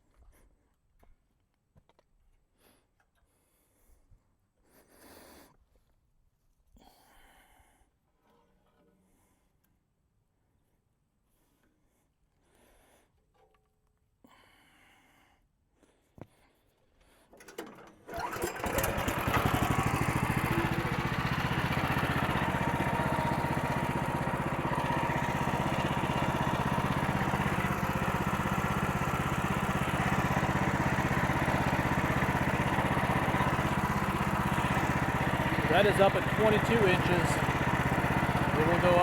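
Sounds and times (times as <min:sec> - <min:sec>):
gas engine running: 0:18.1 - 0:39.0.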